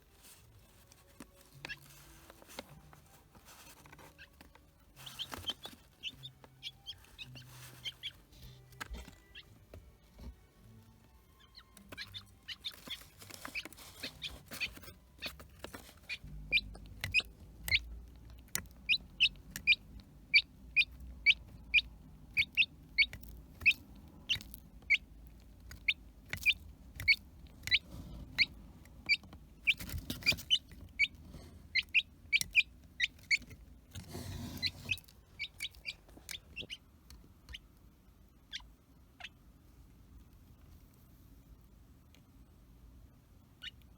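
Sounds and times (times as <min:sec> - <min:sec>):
chick peeping: 0:03.5 - 0:09.6, 0:11.3 - 0:39.4, 0:43.6 - 0:43.9.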